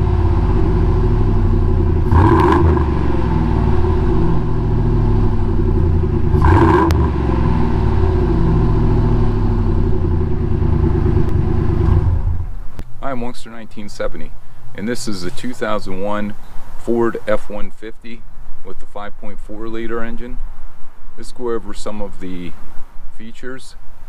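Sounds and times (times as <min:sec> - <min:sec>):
truck engine running and revving: 0:00.0 - 0:12.6.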